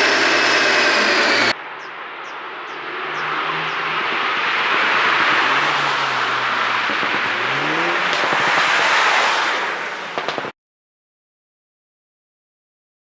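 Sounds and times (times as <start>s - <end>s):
car engine: 0.0s - 1.6s, 2.9s - 10.5s
rushing road noise: 0.0s - 10.5s.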